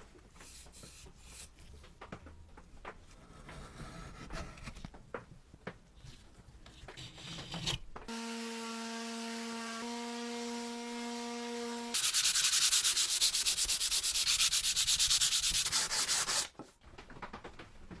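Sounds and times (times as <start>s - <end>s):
sandpaper rubbing by hand: 11.9s - 16.5s.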